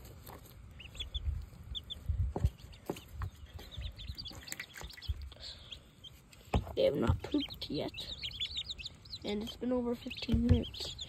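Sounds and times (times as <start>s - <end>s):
chicks and ducklings peeping: 0.0s - 11.0s
soft low thumps: 6.5s - 11.0s.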